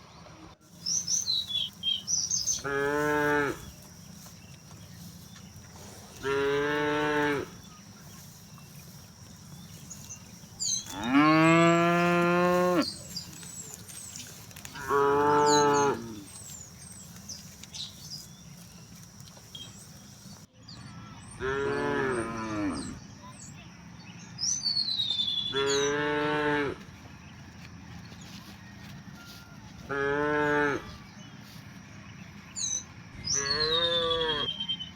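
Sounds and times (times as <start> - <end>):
cattle mooing: 2.5 - 3.8, 5.9 - 7.7, 10.8 - 13.3, 14.6 - 16.5, 21.4 - 23.0, 33.3 - 34.6.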